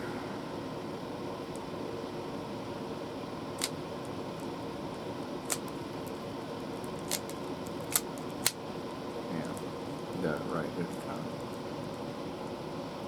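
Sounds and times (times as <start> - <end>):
background hum: 0.0 - 13.0
puzzle cube twisting clicks: 6.8 - 8.6.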